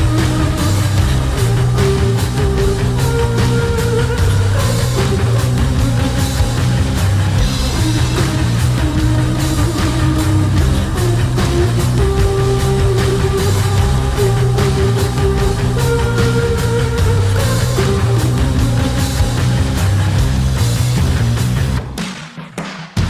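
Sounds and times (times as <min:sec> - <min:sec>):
hard rock music: 0:00.0 - 0:22.6.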